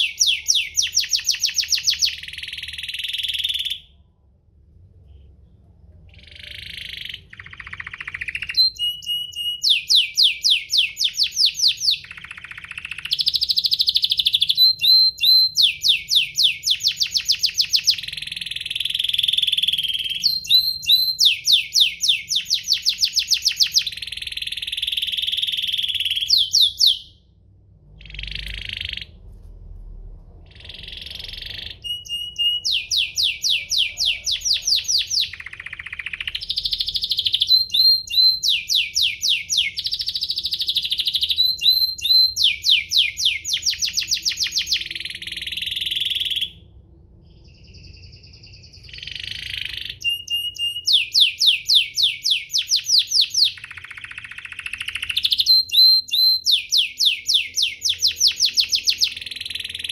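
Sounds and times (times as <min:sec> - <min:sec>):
canary singing trills: 0:00.0 - 0:04.0, 0:06.0 - 0:27.3, 0:28.0 - 0:29.3, 0:30.4 - 0:46.7, 0:47.3 - 0:59.9.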